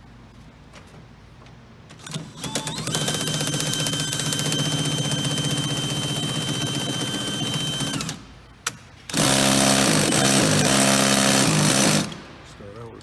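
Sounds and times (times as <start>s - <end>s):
power drill boring into lock: 2.1s - 8.2s.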